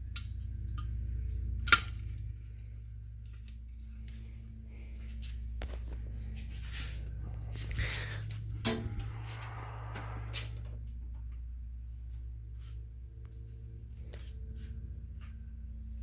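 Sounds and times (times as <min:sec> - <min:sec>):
faint handling clicks and rustles: 0:00.0 - 0:09.2
low mains hum: 0:00.0 - 0:16.0.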